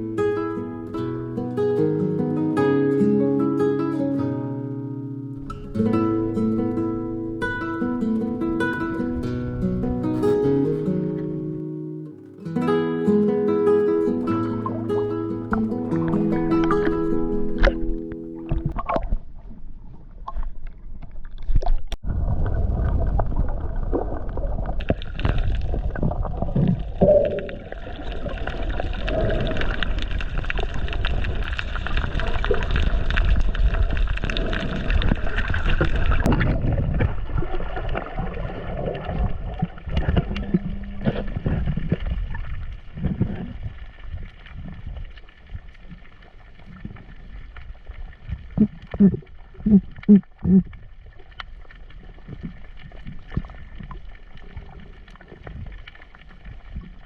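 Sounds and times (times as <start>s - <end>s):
water gurgling and sloshing: 12.4s - 57.0s
low rumble: 22.0s - 45.0s.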